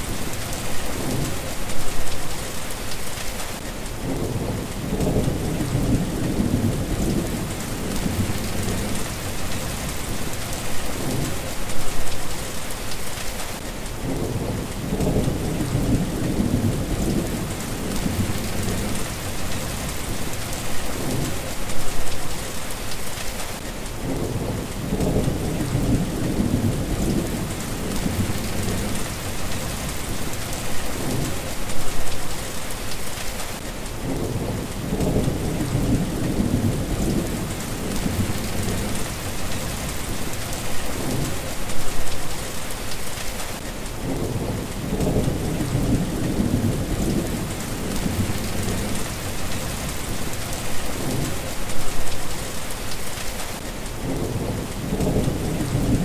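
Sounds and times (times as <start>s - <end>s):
steady rain: 0.0s - 56.0s
rolling thunder: 4.0s - 11.5s, 14.0s - 21.4s, 24.0s - 31.5s, 34.0s - 41.5s, 44.0s - 51.5s, 54.0s - 56.0s.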